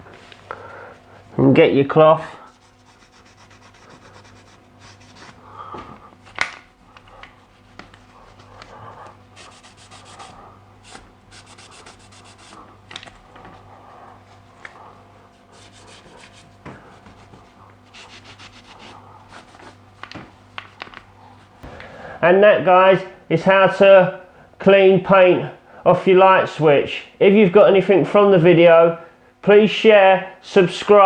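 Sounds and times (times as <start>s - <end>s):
cloth rubbing on plastic: 2.4s - 5.4s, 7.3s - 12.8s, 15.4s - 20.0s.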